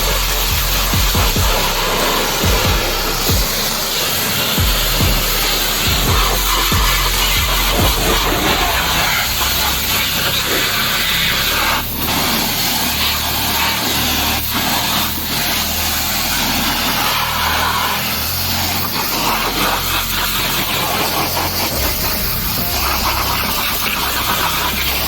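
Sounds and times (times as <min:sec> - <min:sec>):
low machine hum: 0:00.0 - 0:12.3, 0:21.6 - 0:25.0
pressure washer spraying water: 0:00.0 - 0:25.0.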